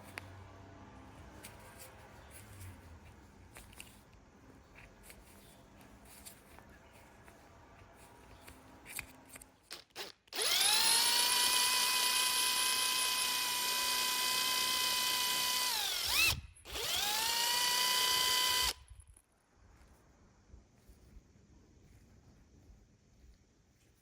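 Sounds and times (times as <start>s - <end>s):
power tool motor whine: 10.0s - 18.8s.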